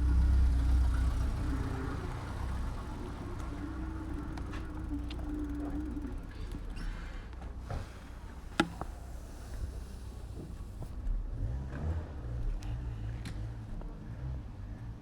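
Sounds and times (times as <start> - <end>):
street traffic and road rumble: 0.0 - 15.0
vehicle engine humming low: 0.0 - 15.0.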